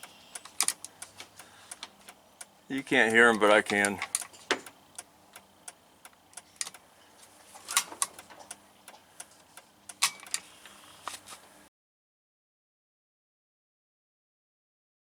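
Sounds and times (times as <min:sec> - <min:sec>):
turn signal flasher clicking: 0:00.0 - 0:06.9, 0:07.7 - 0:11.5.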